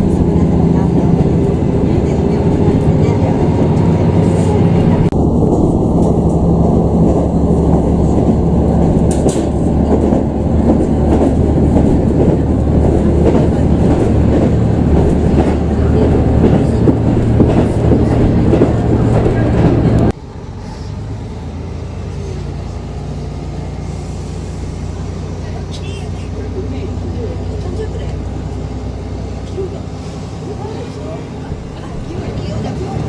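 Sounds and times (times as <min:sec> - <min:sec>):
train rumbling on rails: 0:00.0 - 0:33.0.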